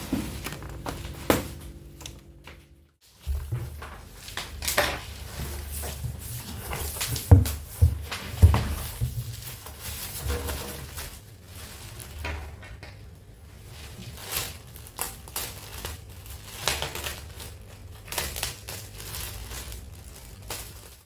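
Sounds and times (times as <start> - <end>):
knocks and thumps of handling box: 6.2 - 9.6.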